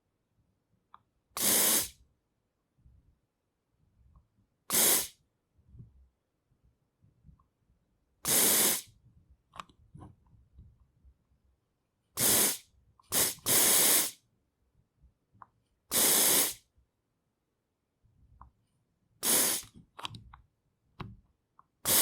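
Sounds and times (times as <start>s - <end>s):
aerosol can spraying: 1.4s - 2.0s, 4.7s - 5.2s, 8.3s - 8.9s, 12.2s - 14.2s, 15.9s - 16.6s, 19.2s - 19.7s.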